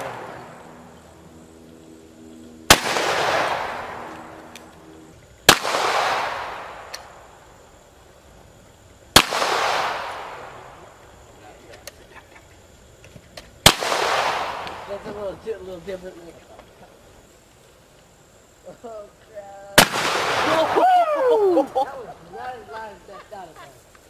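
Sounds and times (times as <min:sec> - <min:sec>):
gunshots with long echo: 0:00.0 - 0:01.0, 0:02.6 - 0:04.6, 0:05.4 - 0:07.4, 0:09.1 - 0:10.8, 0:13.6 - 0:15.0, 0:19.8 - 0:20.8.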